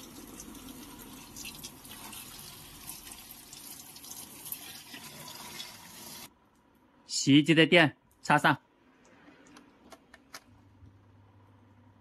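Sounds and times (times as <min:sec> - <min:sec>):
water running into tub: 0:00.0 - 0:06.3.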